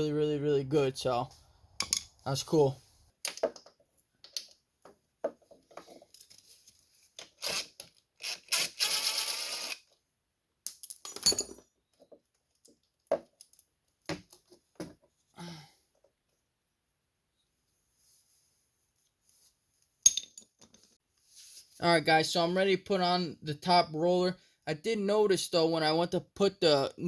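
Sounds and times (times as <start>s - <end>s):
metal tools clinking: 10.9s - 11.6s.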